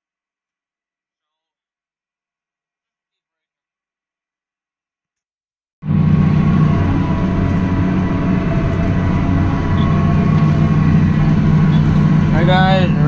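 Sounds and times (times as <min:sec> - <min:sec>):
tractor engine running: 0:05.8 - 0:13.0.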